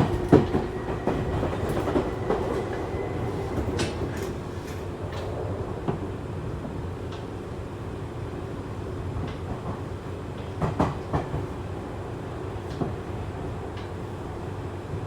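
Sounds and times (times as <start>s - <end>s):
wheels clacking over rail joints: 0.0s - 5.3s
train low rumble: 0.0s - 15.0s.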